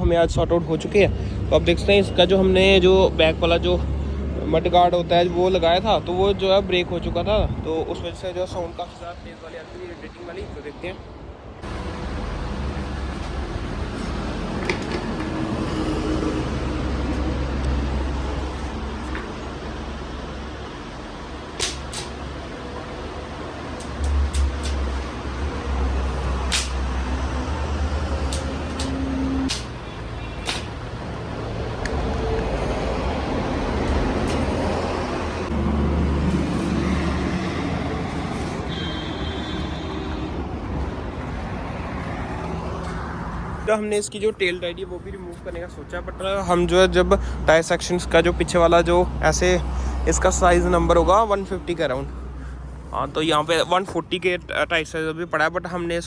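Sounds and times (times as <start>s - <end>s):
road vehicle rumble: 0.0s - 56.0s
sharp click: 21.6s - 22.2s, 26.5s - 26.8s, 28.3s - 29.8s, 30.4s - 30.8s.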